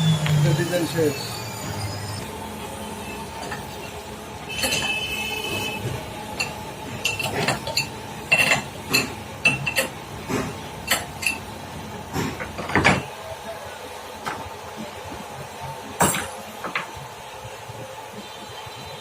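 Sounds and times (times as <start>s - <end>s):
faint workshop hum: 0.0s - 19.0s.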